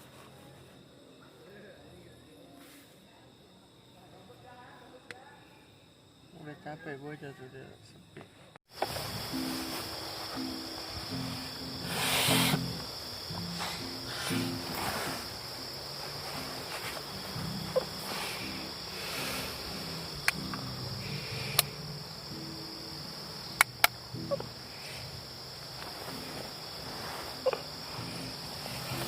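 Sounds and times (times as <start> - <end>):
crickets trilling: 0.0 - 29.0
faint distant music: 0.0 - 29.0
sharp clicks: 21.5 - 21.8, 23.6 - 24.5.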